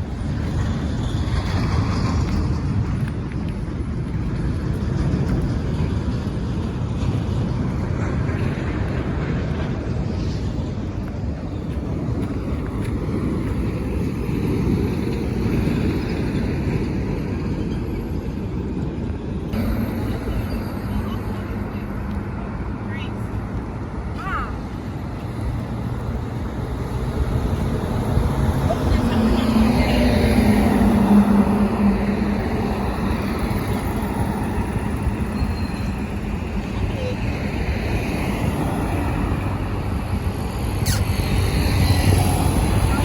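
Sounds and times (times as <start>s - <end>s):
vehicle road noise: 0.0s - 43.0s
wind rumble: 0.0s - 43.0s
low hum: 19.5s - 25.7s.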